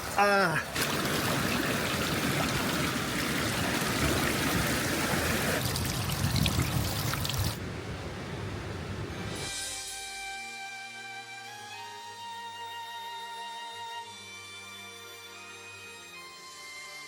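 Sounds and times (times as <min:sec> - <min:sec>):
stream water rushing: 0:00.0 - 0:07.6.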